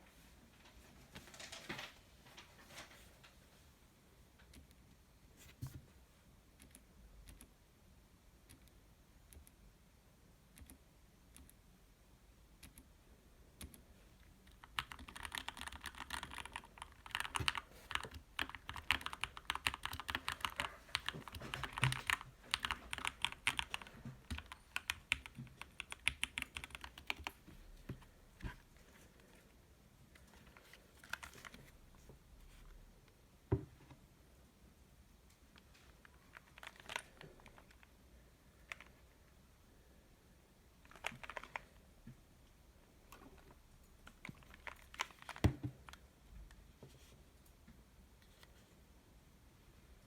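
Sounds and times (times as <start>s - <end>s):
mechanical keyboard typing: 14.5s - 27.4s, 36.3s - 37.8s, 40.8s - 41.7s, 44.0s - 46.0s.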